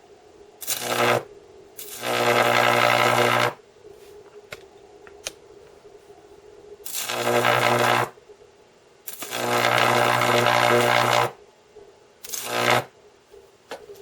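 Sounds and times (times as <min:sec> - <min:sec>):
electric arcs buzzing: 0:00.6 - 0:03.6, 0:06.8 - 0:08.2, 0:09.0 - 0:11.4, 0:12.2 - 0:13.0.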